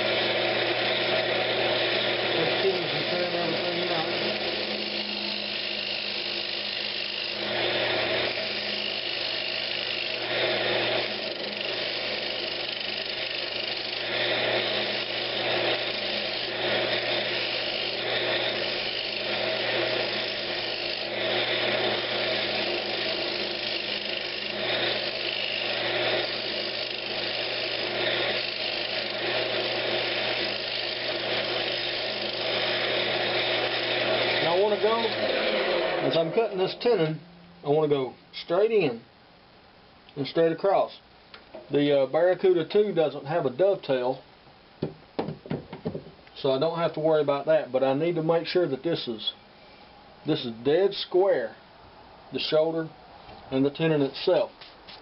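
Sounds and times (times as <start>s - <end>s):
chisel cutting hiss on wood: 0.0s - 36.2s
wood lathe motor hum: 0.0s - 37.0s.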